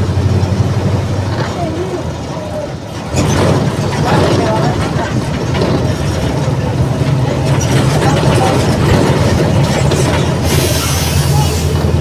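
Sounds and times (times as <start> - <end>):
bus diesel engine droning: 0.0 - 12.0.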